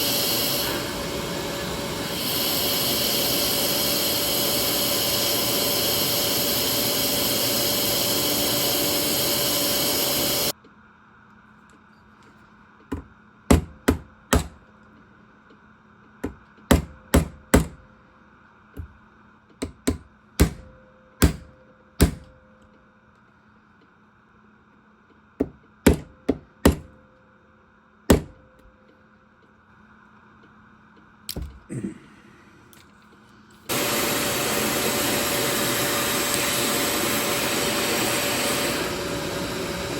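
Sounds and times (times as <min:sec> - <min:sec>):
power tool whirring: 0:00.0 - 0:10.5, 0:33.7 - 0:39.9.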